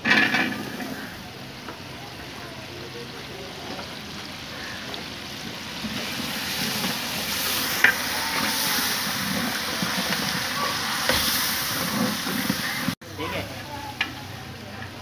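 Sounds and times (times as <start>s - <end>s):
food sizzling while frying: 0.0s - 15.0s
stirring in a pan: 3.1s - 15.0s.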